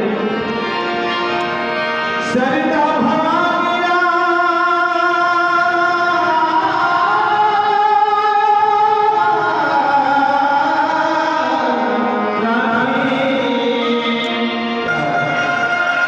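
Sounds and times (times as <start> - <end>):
devotional song instrumental: 0.0 - 16.0.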